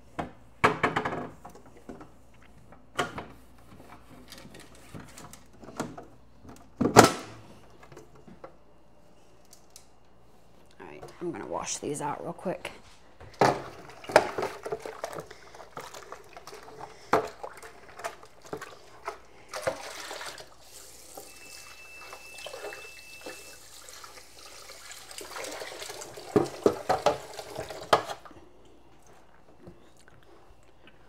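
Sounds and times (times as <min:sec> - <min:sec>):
tap water splashing in sink: 0:22.4 - 0:28.2.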